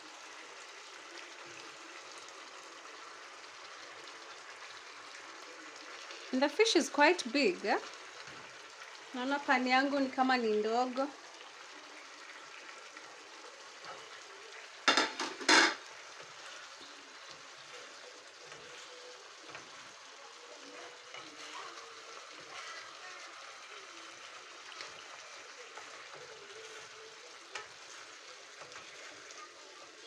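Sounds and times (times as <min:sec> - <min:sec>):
fish sizzling in a pan: 0:00.0 - 0:30.0.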